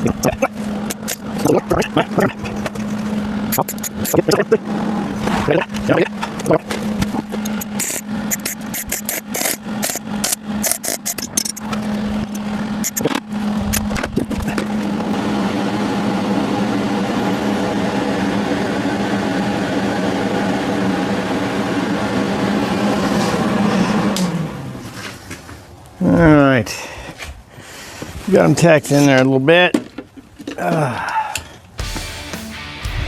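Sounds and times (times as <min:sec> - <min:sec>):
welding machine hum: 0:00.0 - 0:24.8.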